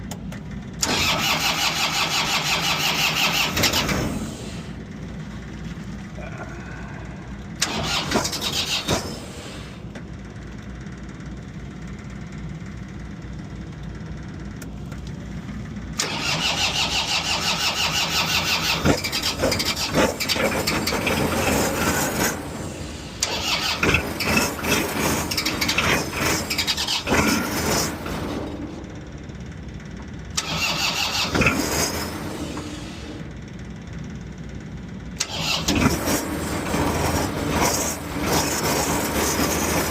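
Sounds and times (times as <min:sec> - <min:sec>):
diesel engine cranking: 0:00.0 - 0:39.9
low engine rumble: 0:00.0 - 0:39.9.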